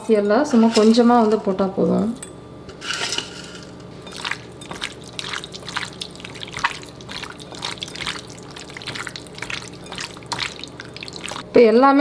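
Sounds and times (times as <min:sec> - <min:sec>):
wet squelches of mixing chicken: 0:04.0 - 0:11.6.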